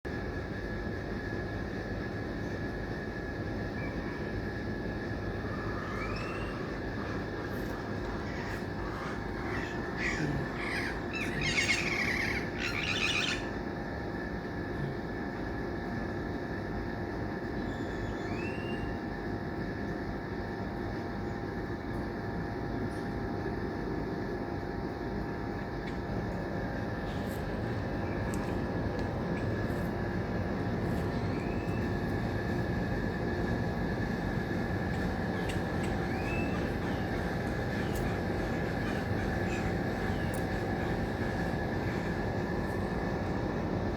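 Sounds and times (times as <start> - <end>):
bird chirps: 8.2 - 13.6, 17.7 - 19.0, 31.1 - 32.1, 35.4 - 40.4
low hum: 18.8 - 43.9.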